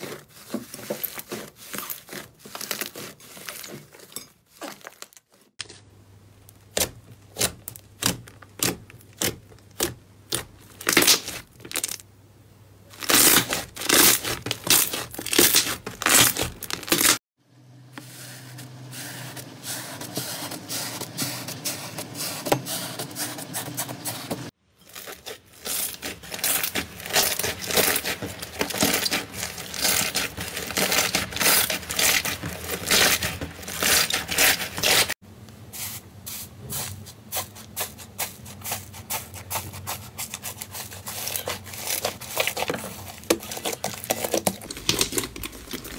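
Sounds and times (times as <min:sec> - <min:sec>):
slime squelching and popping: 0:41.2 - 0:45.9.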